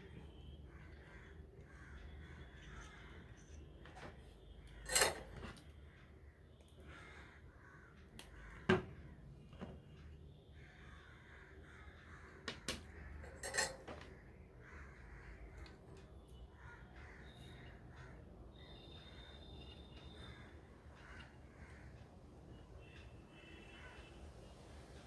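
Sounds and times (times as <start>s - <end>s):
tools clicking and clinking: 4.9s - 5.6s, 13.2s - 14.1s.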